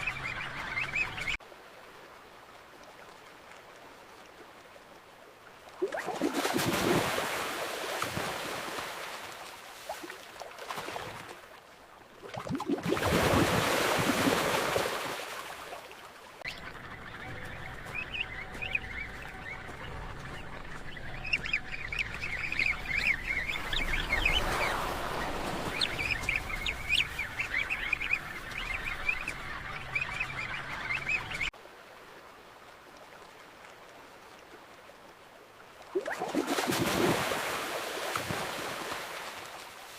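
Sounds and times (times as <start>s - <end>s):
rushing water: 0.0s - 39.9s
wind and sea hiss: 17.9s - 39.9s.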